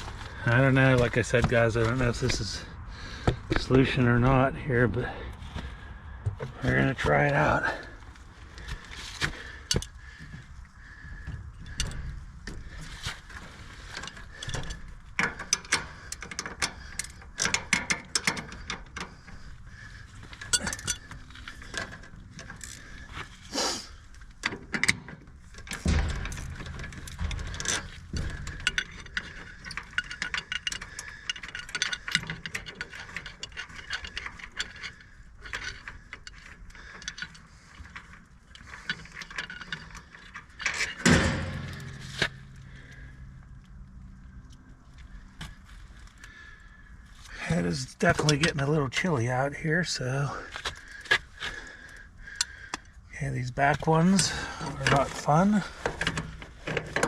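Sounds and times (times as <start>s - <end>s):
metal tools clinking: 10.9s - 43.3s, 50.0s - 57.0s.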